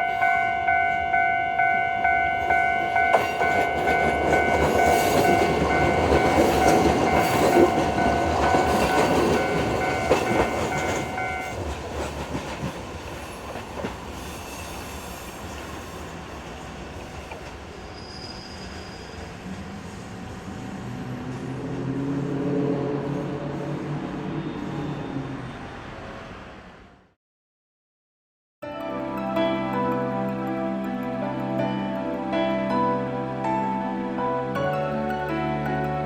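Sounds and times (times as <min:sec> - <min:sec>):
level crossing warning bell: 0:00.0 - 0:11.8
train passing: 0:00.0 - 0:27.2.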